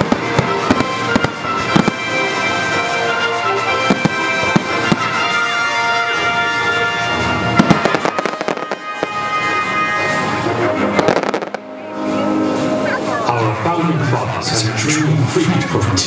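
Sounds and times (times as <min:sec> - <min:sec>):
fireworks bursting and crackling: 0:00.0 - 0:11.7
music playing: 0:00.0 - 0:16.0.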